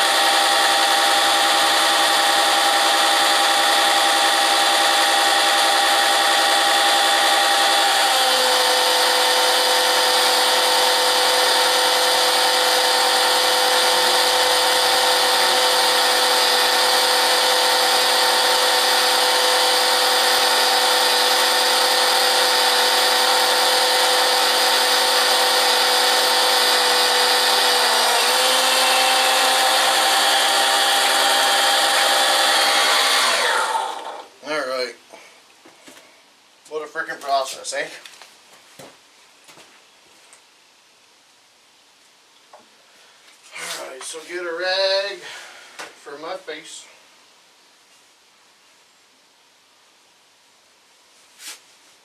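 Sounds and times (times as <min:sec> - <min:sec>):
garden tractor engine running: 0:00.0 - 0:34.4.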